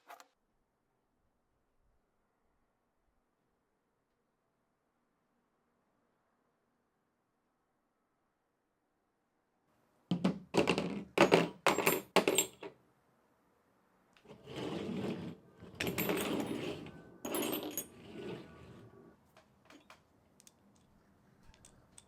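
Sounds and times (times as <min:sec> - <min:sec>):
metal scraping and rubbing: 0:14.2 - 0:19.1.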